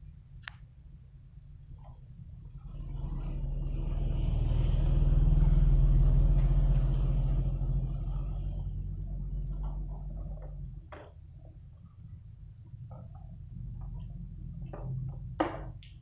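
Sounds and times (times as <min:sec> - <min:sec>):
vehicle engine passing by: 0:02.4 - 0:10.8.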